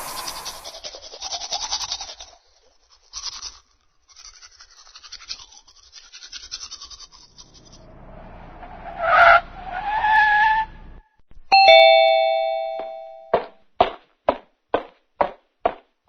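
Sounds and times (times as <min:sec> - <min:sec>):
rapid scrubbing strokes: 0:00.0 - 0:07.8.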